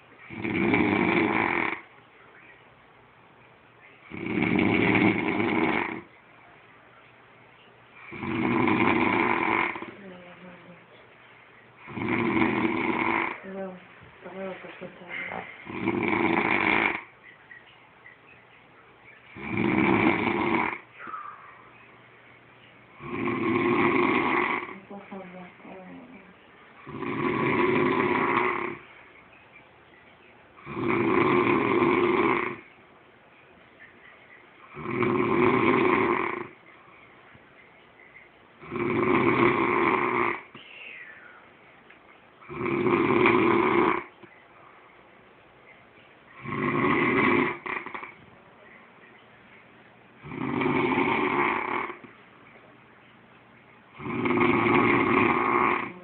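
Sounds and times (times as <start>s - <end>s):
person snoring heavily: 0.3s - 1.9s, 4.1s - 6.1s, 8.1s - 9.9s, 11.8s - 13.4s, 15.6s - 17.1s, 19.4s - 20.9s, 23.0s - 24.8s, 26.8s - 28.8s, 30.6s - 32.6s, 34.7s - 36.6s, 38.6s - 40.5s, 42.5s - 44.1s, 46.4s - 48.2s, 50.2s - 52.1s, 54.0s - 56.0s
quiet breathing: 4.0s - 32.8s, 33.4s - 56.0s.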